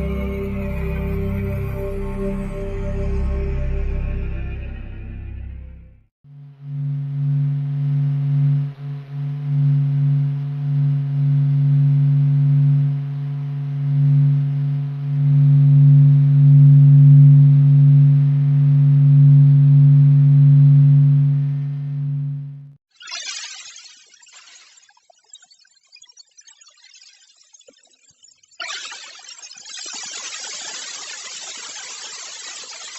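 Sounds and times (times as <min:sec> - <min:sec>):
low humming drone: 0:00.0 - 0:22.8.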